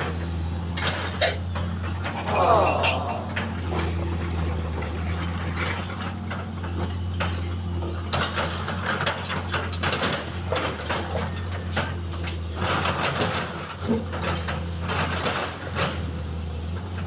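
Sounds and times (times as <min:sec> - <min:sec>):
mechanical rattling and clanking: 0:00.8 - 0:16.1
low engine drone: 0:02.0 - 0:06.7.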